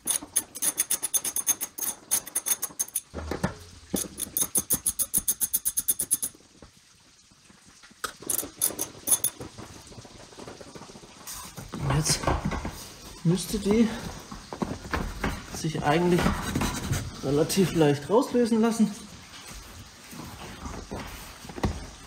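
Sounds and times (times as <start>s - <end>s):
ratchet wrench clicking: 0.0s - 3.1s, 4.0s - 6.3s, 8.2s - 9.3s.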